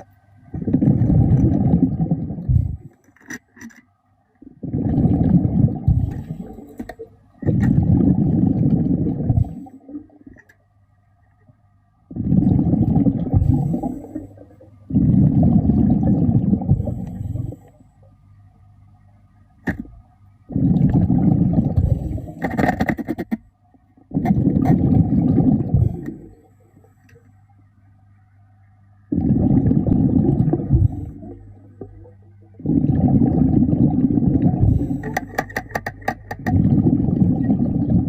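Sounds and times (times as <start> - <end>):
diver exhaling bubbles underwater: 0.5 - 2.9, 4.4 - 10.4, 12.1 - 17.7, 20.5 - 22.9, 24.1 - 26.5, 29.1 - 38.0.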